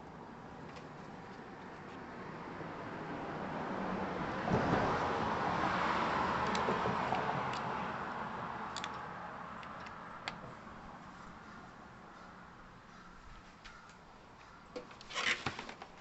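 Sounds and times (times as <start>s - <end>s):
vehicle passing by: 2.2s - 12.2s.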